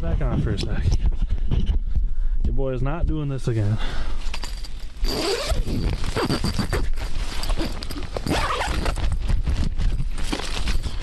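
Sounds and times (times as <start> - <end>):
tent zipper being pulled: 5.0 - 11.0.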